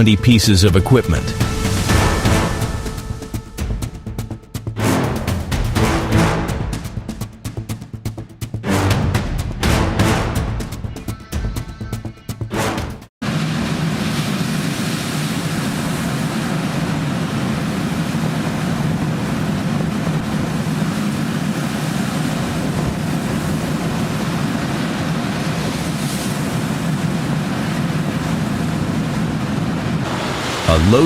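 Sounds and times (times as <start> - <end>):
wind rushing: 0.0 - 7.5, 28.5 - 31.0
sea waves: 0.0 - 8.0, 12.6 - 31.0.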